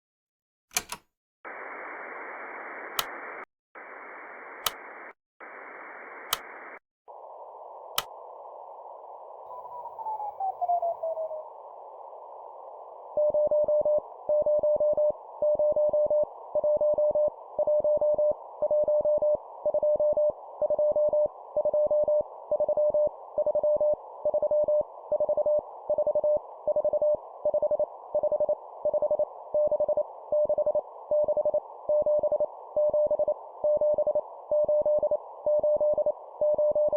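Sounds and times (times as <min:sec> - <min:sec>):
sharp clicks: 0:00.7 - 0:01.1, 0:02.9 - 0:03.4, 0:04.6 - 0:05.0, 0:06.2 - 0:06.8, 0:07.9 - 0:08.2
radio hiss: 0:01.5 - 0:09.8.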